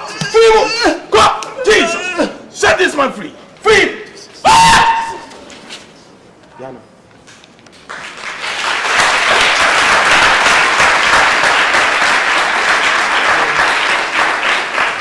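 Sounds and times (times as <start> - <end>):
congregation applauding: 7.8 - 15.0.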